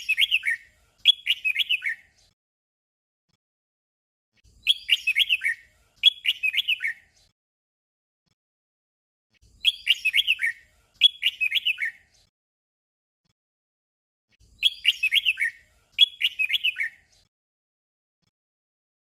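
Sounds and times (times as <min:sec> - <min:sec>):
bird singing warbled phrase: 0:00.0 - 0:02.2, 0:04.5 - 0:07.2, 0:09.4 - 0:12.1, 0:14.4 - 0:17.2.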